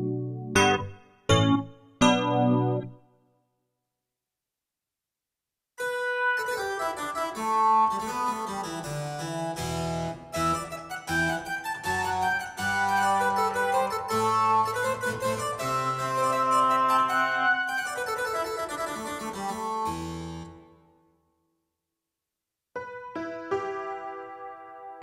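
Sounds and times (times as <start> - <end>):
harpsichord keyboard melody: 0.0 - 3.0, 6.1 - 20.6, 22.8 - 25.0.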